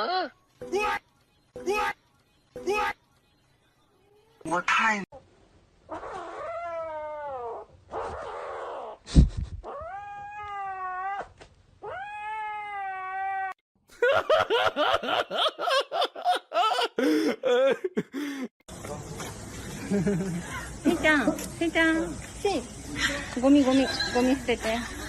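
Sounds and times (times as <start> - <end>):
cat yowling: 5.9 - 8.9, 9.7 - 13.6.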